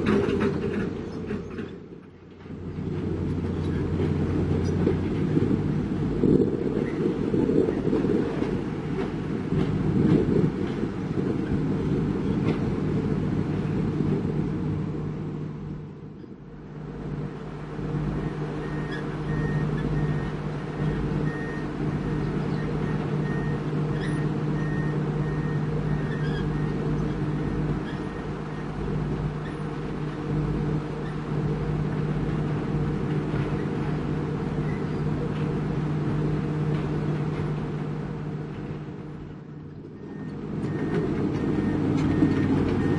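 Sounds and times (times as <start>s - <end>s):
heavy machinery diesel engines: 0.0s - 42.9s
reversing alarm beeping: 18.1s - 28.7s, 40.0s - 42.9s.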